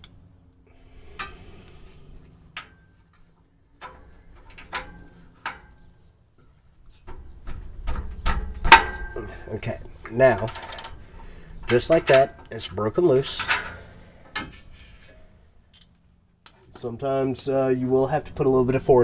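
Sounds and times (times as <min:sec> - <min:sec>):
socket and wrench clinking: 0:13.3 - 0:15.0.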